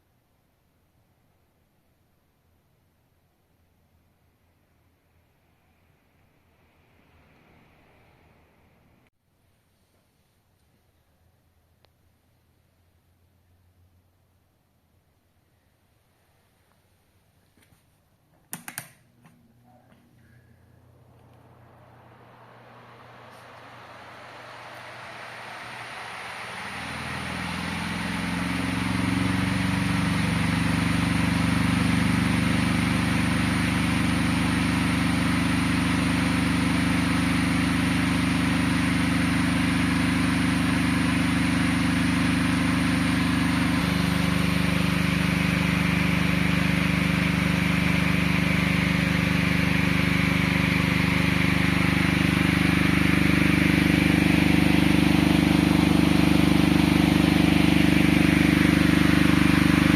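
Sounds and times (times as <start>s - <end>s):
electric fan motor hum: 18.6s - 59.9s
rush of air: 20.4s - 29.8s.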